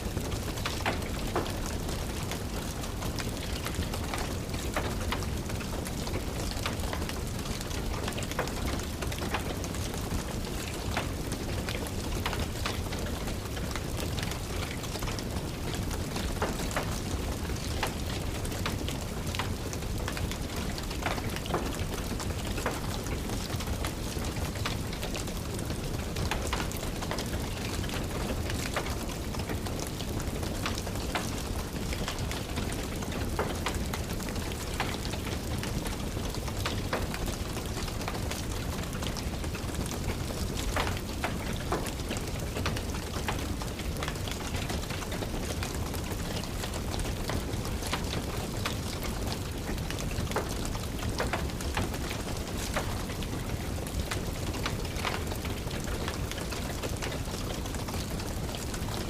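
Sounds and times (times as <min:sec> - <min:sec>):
rain falling and tapping: 0:00.0 - 0:59.0
wood fire crackling: 0:00.0 - 0:59.0.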